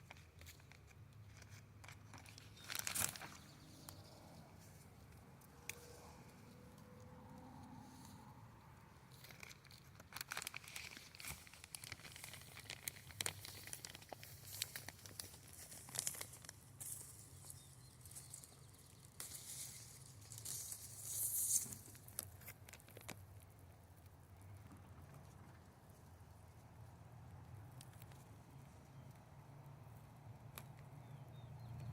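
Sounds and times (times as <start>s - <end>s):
leaves and branches rustling: 1.3s - 6.8s, 9.1s - 23.0s.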